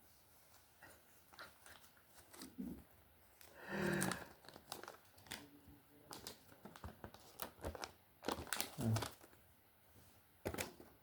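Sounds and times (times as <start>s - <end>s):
plastic packaging crinkling: 3.3s - 9.4s.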